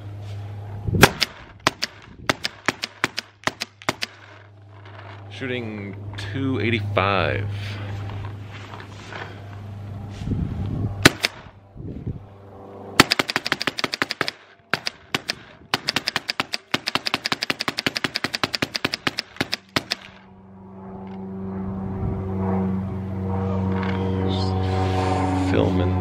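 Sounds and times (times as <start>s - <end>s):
paintball marker firing: 1.0s - 4.4s, 11.0s - 11.5s, 13.0s - 20.3s.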